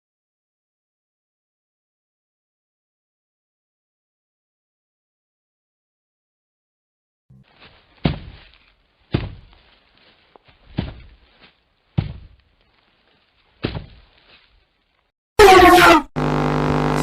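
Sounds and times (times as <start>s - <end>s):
dull thuds: 7.3s - 14.6s.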